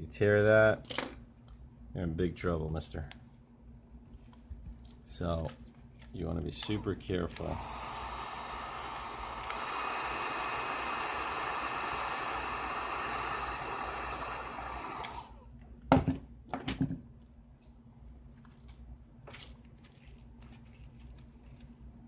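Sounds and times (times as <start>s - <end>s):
heat gun blowing: 6.6s - 15.5s.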